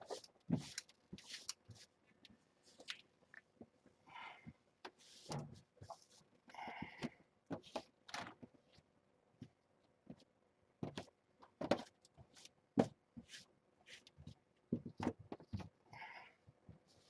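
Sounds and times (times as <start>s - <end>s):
knocks and scrapes of handling: 0.0s - 3.7s.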